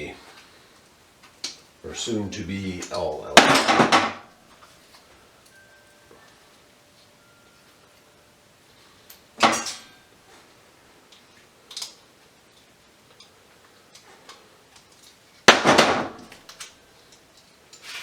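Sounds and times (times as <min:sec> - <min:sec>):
metal parts clanking: 0:09.4 - 0:10.0.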